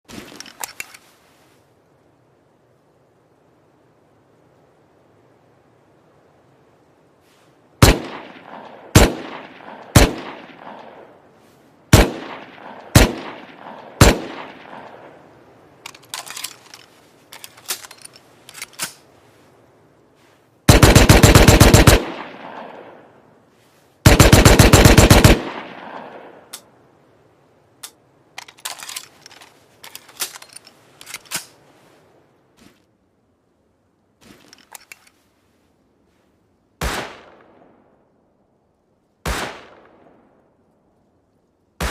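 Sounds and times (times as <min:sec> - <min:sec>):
gun rattling bursts: 0:00.1 - 0:01.1, 0:07.8 - 0:11.3, 0:11.9 - 0:19.2, 0:20.7 - 0:23.1, 0:24.0 - 0:26.6, 0:27.8 - 0:31.7, 0:34.4 - 0:35.2
small clicks: 0:00.3 - 0:01.2, 0:15.8 - 0:19.1, 0:27.8 - 0:31.6, 0:34.4 - 0:35.2
imitation gun shots: 0:07.8 - 0:11.0, 0:11.9 - 0:15.1, 0:20.7 - 0:22.9, 0:24.1 - 0:26.3.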